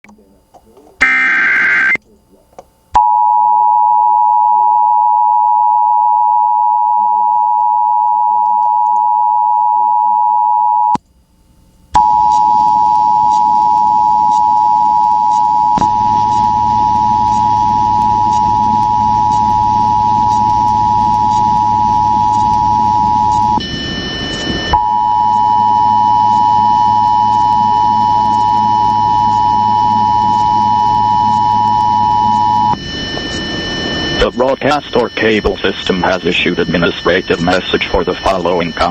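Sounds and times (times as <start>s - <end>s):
low hum and hiss: 0.1s - 3.1s, 11.0s - 38.9s
two-tone electronic attention signal: 1.0s - 2.0s, 12.0s - 38.9s.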